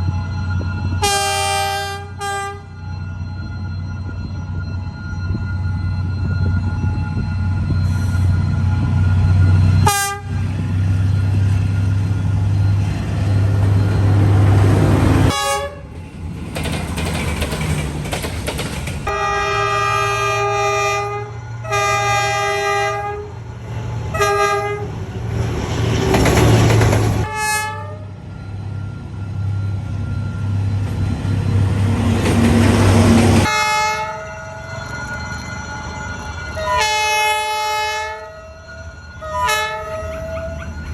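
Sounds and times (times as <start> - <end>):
locomotive horn blasts: 1.0 - 2.8, 9.8 - 10.6, 14.7 - 15.9, 19.1 - 23.4, 24.1 - 25.0, 27.2 - 28.2, 33.5 - 34.4, 36.6 - 38.6, 39.2 - 40.7.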